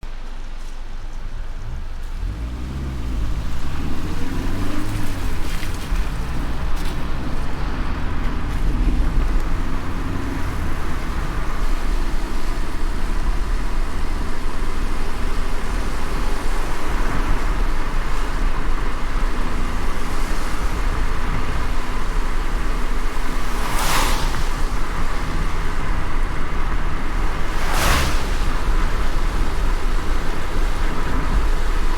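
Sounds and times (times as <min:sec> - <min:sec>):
car driving on wet road: 0:00.0 - 0:31.9
rain hiss: 0:00.2 - 0:31.9
loud whoosh: 0:23.4 - 0:30.5.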